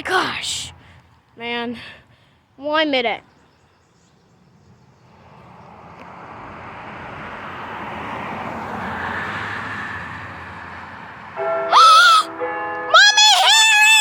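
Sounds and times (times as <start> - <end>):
passing vehicle rushing: 4.7 - 12.9.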